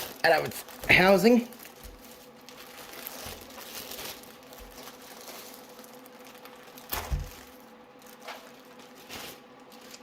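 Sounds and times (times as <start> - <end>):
packaging rustling: 0.0 - 10.0.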